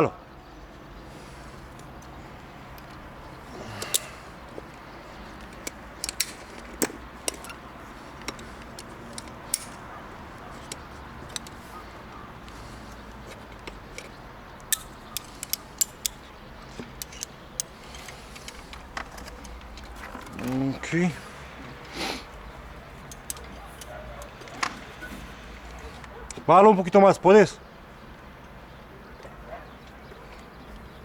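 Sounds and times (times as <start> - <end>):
light metallic clicks and taps: 3.8 - 20.6, 22.8 - 26.5.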